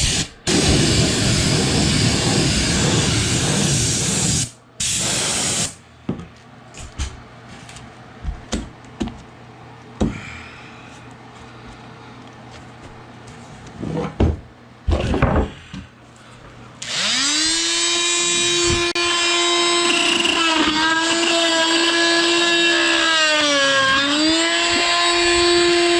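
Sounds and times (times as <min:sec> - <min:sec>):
hiss: 0:00.0 - 0:05.8
power tool motor whining: 0:16.8 - 0:25.9.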